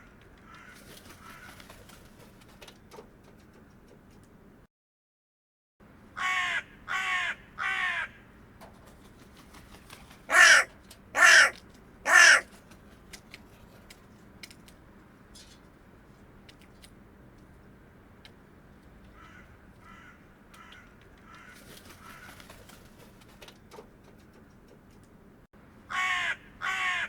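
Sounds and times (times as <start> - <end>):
crow cawing: 0.4 - 1.5, 6.2 - 8.2, 10.3 - 12.5, 19.2 - 22.3, 25.9 - 27.0.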